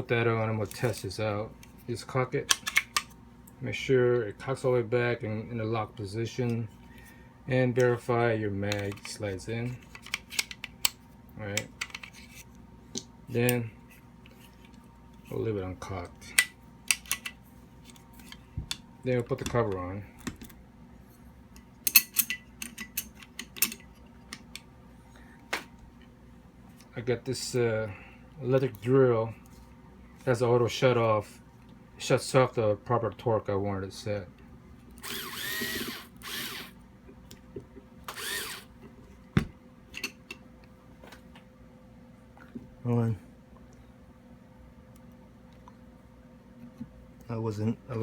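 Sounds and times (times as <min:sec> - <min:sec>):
metal gun parts clicking: 0:02.5 - 0:03.1
electric drill driving a screw: 0:35.0 - 0:36.8, 0:38.1 - 0:38.7.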